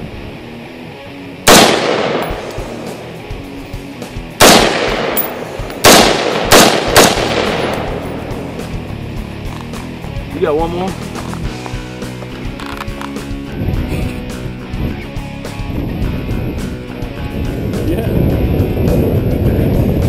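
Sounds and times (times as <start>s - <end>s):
gunshots with echoing tail: 1.5s - 3.3s, 4.4s - 8.9s.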